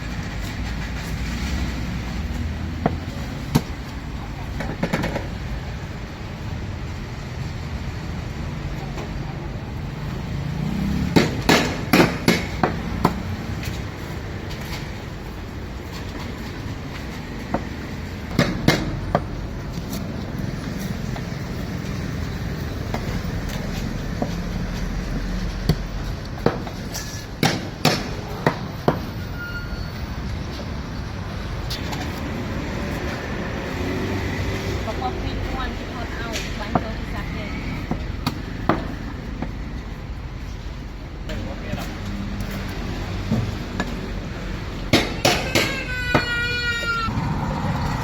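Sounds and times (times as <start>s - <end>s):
low rumble of traffic: 0.0s - 48.0s
sharp knocks: 11.1s - 13.2s.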